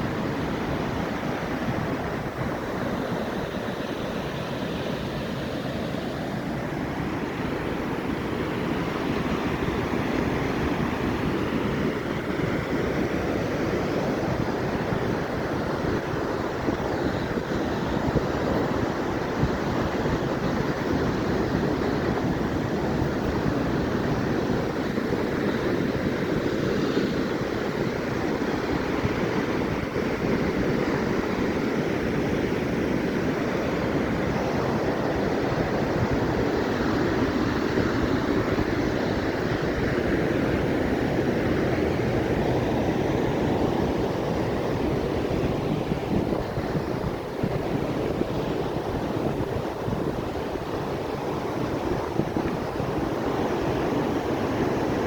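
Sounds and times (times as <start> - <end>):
ocean surf rushing: 0.0 - 55.0
wind buffeting microphone: 0.0 - 55.0.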